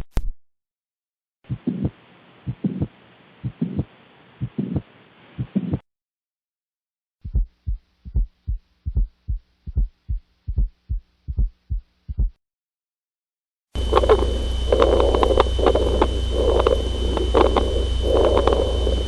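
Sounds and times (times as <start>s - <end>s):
heartbeat through stethoscope: 1.5s - 5.8s, 7.2s - 12.4s, 13.8s - 19.0s
steady hum: 1.5s - 5.8s, 13.8s - 19.0s
thin high whine: 13.8s - 19.0s.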